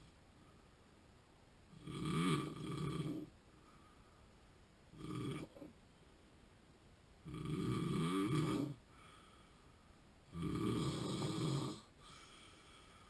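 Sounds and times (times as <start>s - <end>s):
quiet breathing: 0.0s - 6.3s, 7.2s - 13.0s
man snoring: 1.7s - 3.3s, 5.0s - 5.6s, 7.2s - 8.8s, 10.3s - 11.9s.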